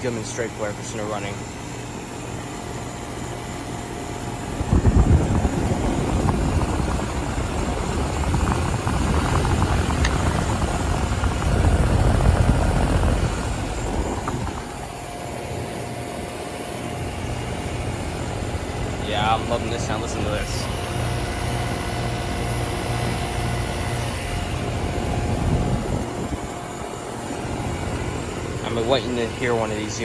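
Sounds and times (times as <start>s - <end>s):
air conditioner unit humming: 0.0s - 30.0s
uneven low rumble: 4.4s - 15.4s.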